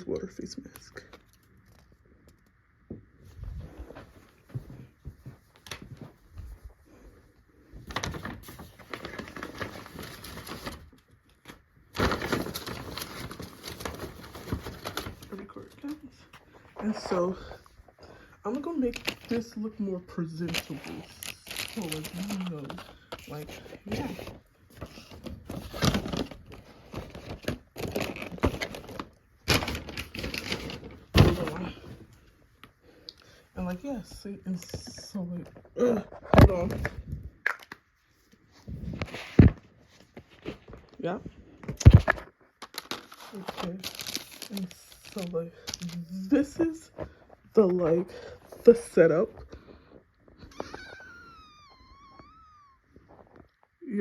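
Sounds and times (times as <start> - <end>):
packaging crinkling and rustling: 7.7 - 17.6, 18.5 - 32.7, 36.2 - 47.4.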